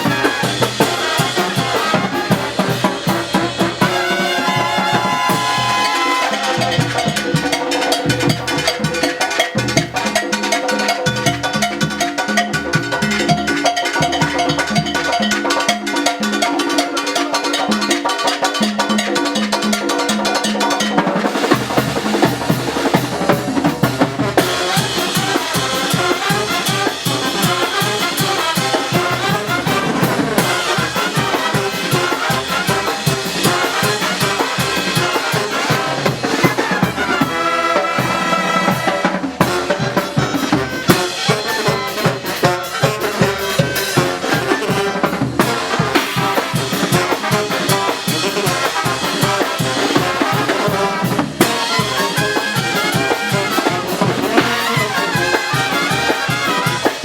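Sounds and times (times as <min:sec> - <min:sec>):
low drums: 0:00.0 - 0:09.0, 0:21.2 - 0:57.0
brass band playing: 0:00.0 - 0:57.0.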